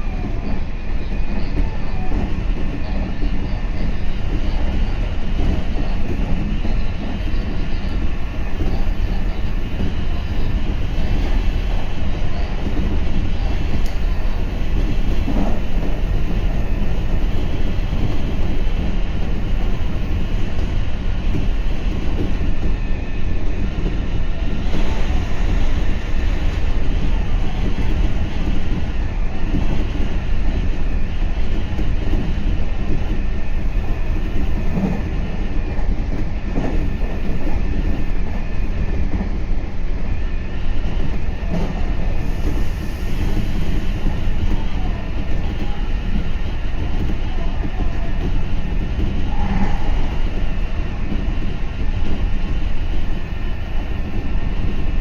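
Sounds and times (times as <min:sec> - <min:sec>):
train wheels rumbling on rail: 0:00.0 - 0:55.0.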